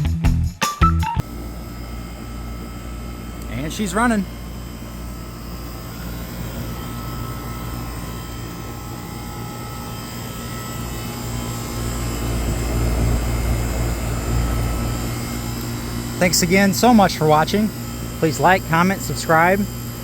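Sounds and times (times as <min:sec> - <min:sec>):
air conditioner unit droning: 0:01.2 - 0:20.0.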